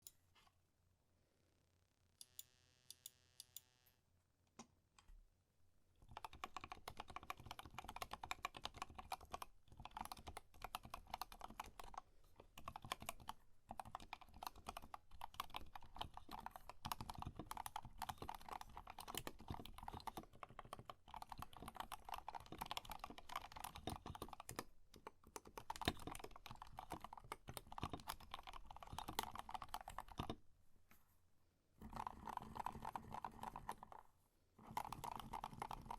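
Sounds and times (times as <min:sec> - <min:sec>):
typing on mechanical keyboard: 0:06.0 - 0:30.4, 0:31.8 - 0:34.0, 0:34.6 - 0:35.9.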